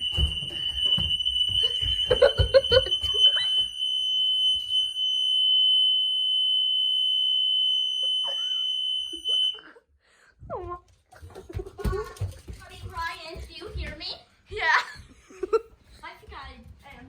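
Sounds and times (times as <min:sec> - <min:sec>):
fire alarm tone: 0:00.0 - 0:09.9.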